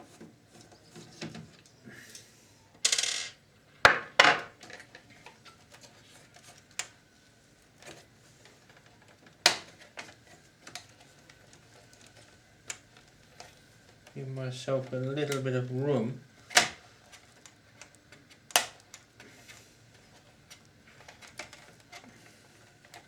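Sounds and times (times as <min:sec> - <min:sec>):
small metal parts clinking: 0:02.9 - 0:03.4.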